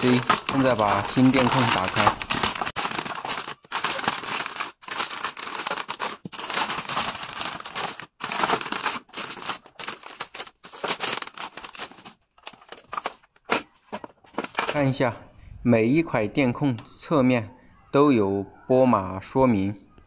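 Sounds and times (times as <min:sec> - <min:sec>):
packaging tearing and crinkling: 0:00.0 - 0:14.8.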